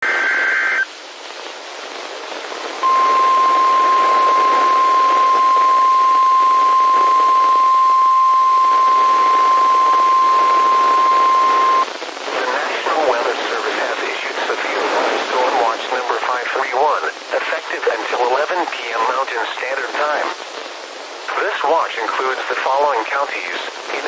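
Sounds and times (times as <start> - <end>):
radio hiss: 0.0 - 24.0
loud steady alarm beep: 2.8 - 11.8.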